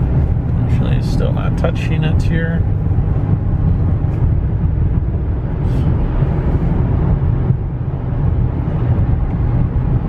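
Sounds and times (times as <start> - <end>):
road and engine rumble in car: 0.0 - 10.0.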